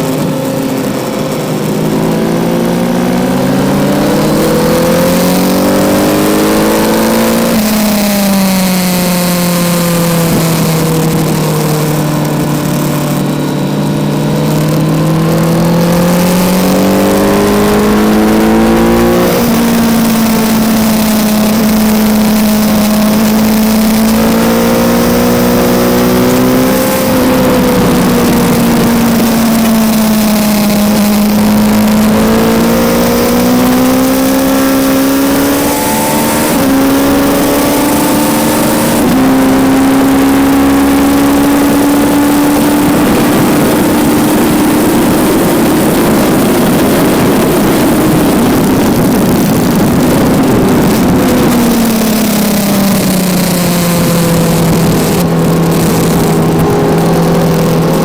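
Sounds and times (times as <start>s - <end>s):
motorcycle engine accelerating: 0.0s - 58.0s.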